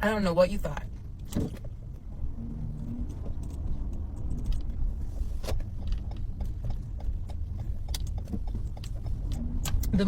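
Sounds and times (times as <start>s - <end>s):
car cabin rumble: 0.0s - 10.0s.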